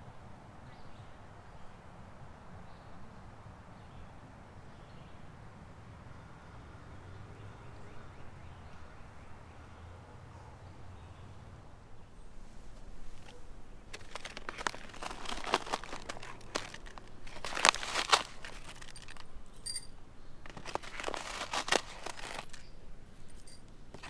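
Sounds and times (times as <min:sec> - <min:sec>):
packaging crinkling and rustling: 0:12.7 - 0:24.0.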